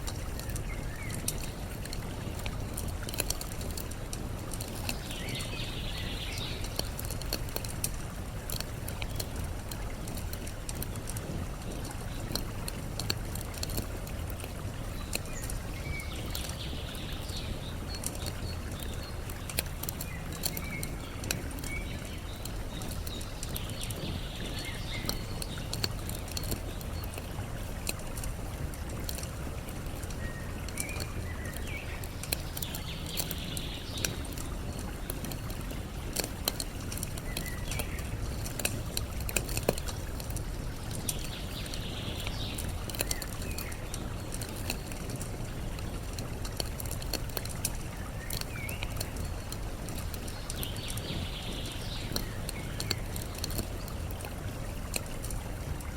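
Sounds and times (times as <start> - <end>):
campfire crackling: 0.0 - 55.9
flowing water: 0.0 - 55.9.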